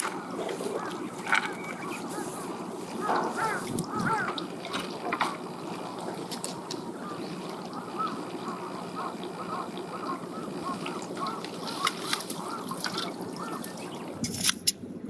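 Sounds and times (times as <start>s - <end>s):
birds calling: 0.0s - 14.2s
steady background noise: 0.0s - 15.0s.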